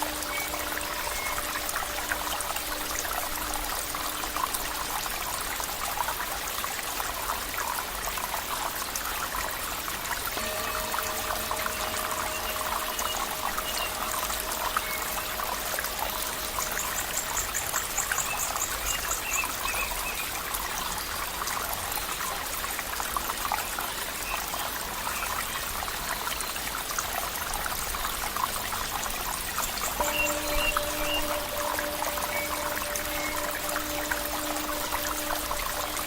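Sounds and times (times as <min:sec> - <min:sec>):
stream water trickling: 0:00.0 - 0:36.0.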